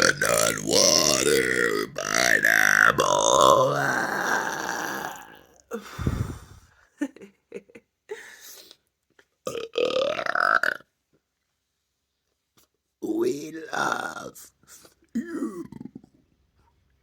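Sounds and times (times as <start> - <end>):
person burping: 0.0 - 6.6, 9.4 - 10.9, 15.1 - 16.0.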